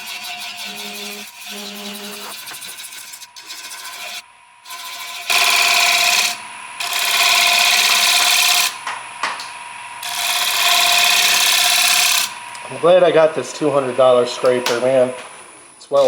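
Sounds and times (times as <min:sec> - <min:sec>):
scraper rasping on wood: 0:00.0 - 0:06.3
lathe humming: 0:00.0 - 0:16.0.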